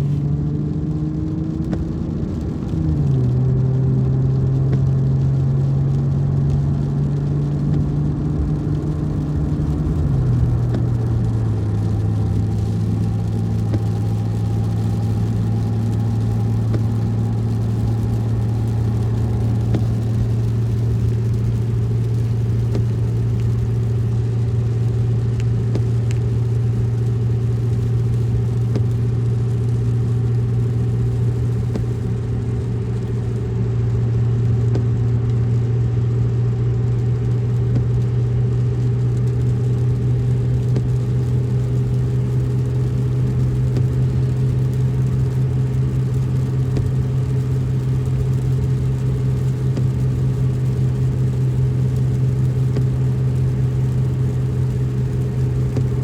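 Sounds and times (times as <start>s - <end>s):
car engine and road noise inside: 0.0s - 56.0s.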